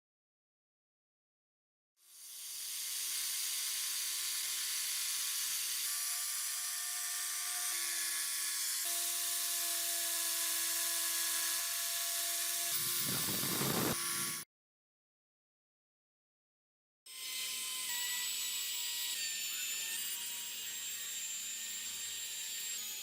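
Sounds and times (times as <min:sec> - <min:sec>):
electric power tool running: 0:02.0 - 0:14.4.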